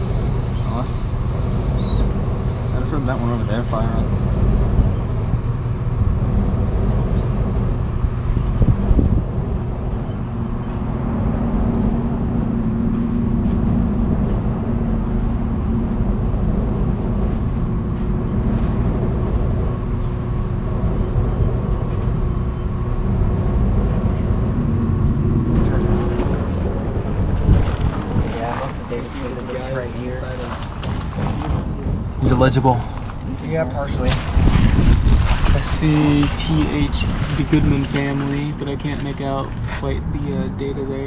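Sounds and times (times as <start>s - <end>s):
faint high whine: 0.0s - 30.8s
air conditioning equipment humming: 0.0s - 41.0s.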